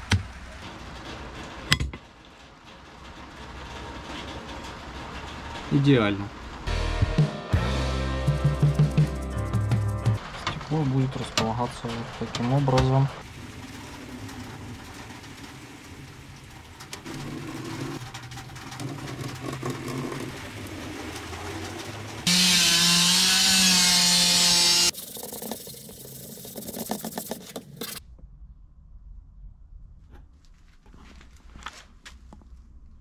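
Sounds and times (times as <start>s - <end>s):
handling noises and knocks: 0.0s - 2.4s
electric power tool running: 22.3s - 24.9s.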